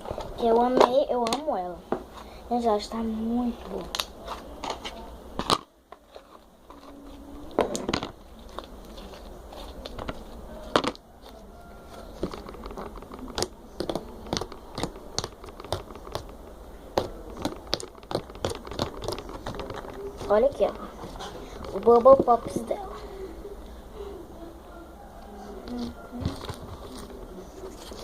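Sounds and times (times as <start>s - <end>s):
slime clicking and crackling: 7.7s - 22.8s.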